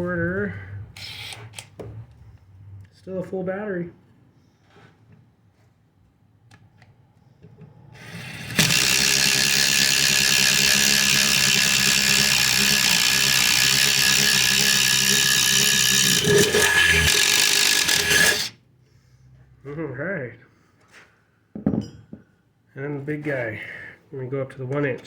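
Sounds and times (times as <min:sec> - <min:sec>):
impact driver boring through wood: 0:08.0 - 0:18.6.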